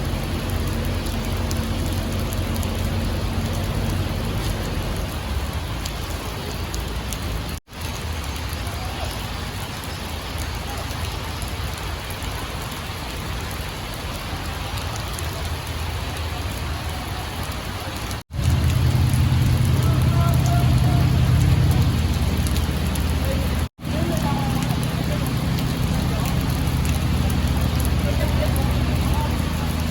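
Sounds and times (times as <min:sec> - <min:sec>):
rain falling: 0:00.0 - 0:29.9
low hum: 0:18.3 - 0:29.9.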